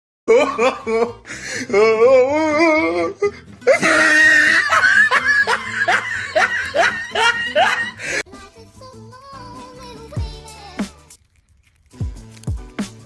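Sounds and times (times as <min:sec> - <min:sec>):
person laughing: 0:00.3 - 0:08.2
background music: 0:00.3 - 0:11.2, 0:11.9 - 0:13.0.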